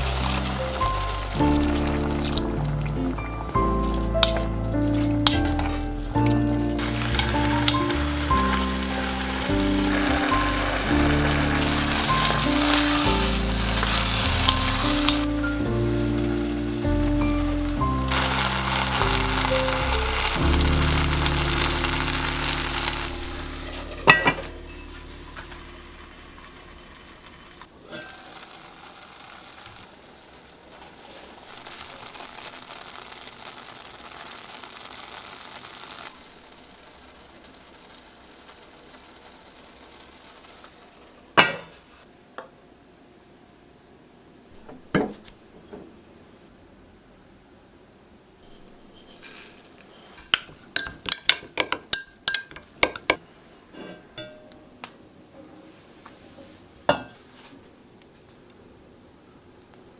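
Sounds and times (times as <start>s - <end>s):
food sizzling in a pot: 0.0s - 41.9s, 48.5s - 53.1s.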